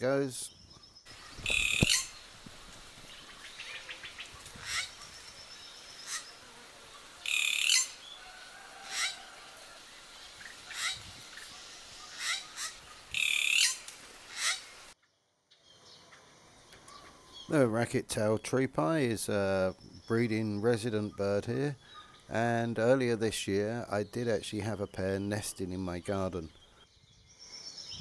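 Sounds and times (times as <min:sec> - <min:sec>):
long loud bird calls: 0:00.0 - 0:15.0, 0:15.6 - 0:22.7
bird calling sharp notes: 0:01.1 - 0:02.5, 0:03.1 - 0:08.2, 0:08.8 - 0:14.8.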